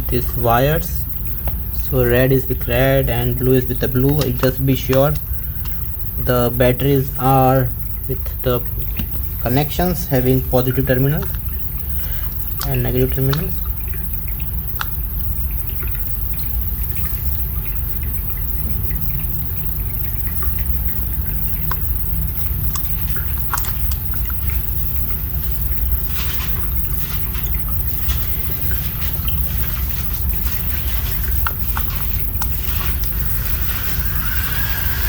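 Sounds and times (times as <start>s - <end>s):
light clicks and ticks: 3.1s - 6.2s, 11.1s - 19.3s
small electric motor humming: 28.1s - 35.0s.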